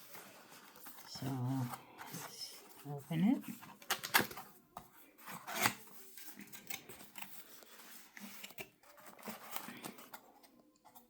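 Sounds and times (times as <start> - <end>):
packaging clicks: 3.7 - 4.5.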